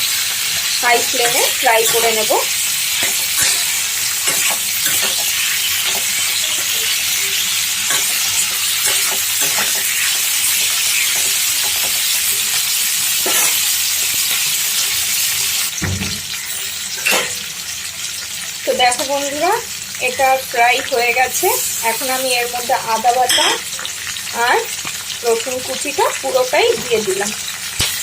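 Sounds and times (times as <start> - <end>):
vegetables sizzling in hot oil: 0.0 - 28.0
spatula scraping a pan: 0.1 - 14.3.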